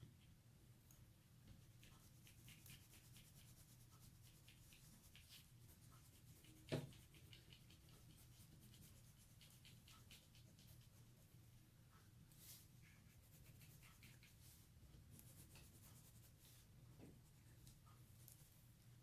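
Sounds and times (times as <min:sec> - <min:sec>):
pencil scratching on paper: 0:01.6 - 0:16.7.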